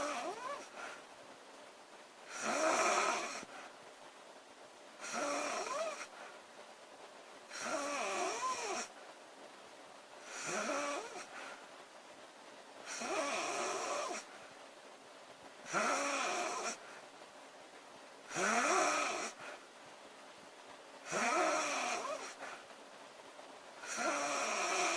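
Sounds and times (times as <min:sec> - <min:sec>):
girl snoring loudly: 0:00.0 - 0:00.7, 0:02.3 - 0:03.5, 0:05.0 - 0:06.1, 0:07.5 - 0:08.9, 0:10.2 - 0:11.3, 0:12.9 - 0:14.3, 0:15.6 - 0:16.8, 0:18.3 - 0:19.4, 0:21.0 - 0:22.4, 0:23.8 - 0:24.9.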